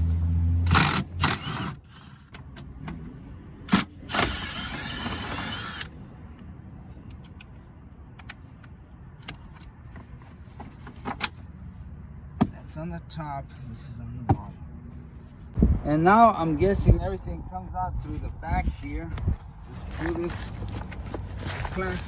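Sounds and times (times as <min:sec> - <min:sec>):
rustling scraping: 0:19.4 - 0:22.0.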